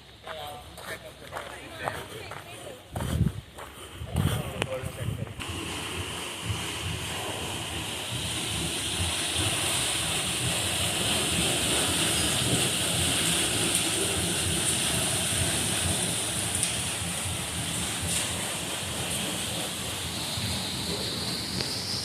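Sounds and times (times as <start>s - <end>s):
water rushing at water wheel: 5.3s - 22.0s.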